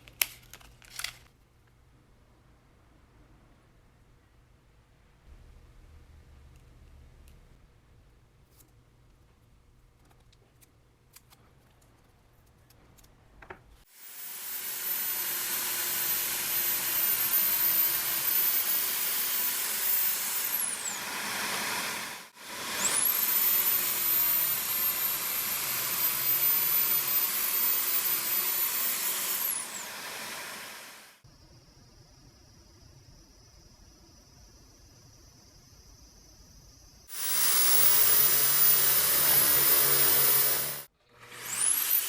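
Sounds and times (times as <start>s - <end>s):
disc sander grinding: 14.3s - 31.2s, 37.1s - 42.0s.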